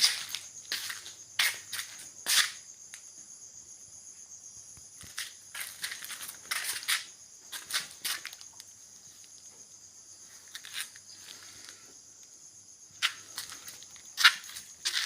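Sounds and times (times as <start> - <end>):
high-pitched hiss: 0.0 - 15.0
rustling and crunching: 5.0 - 8.6, 13.0 - 15.0.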